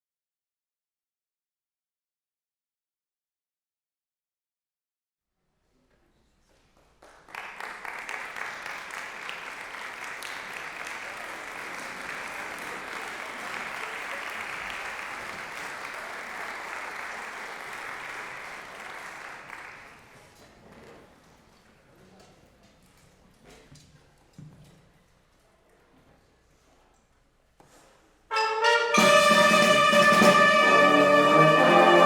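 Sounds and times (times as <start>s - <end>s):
audience applauding: 6.8s - 20.4s.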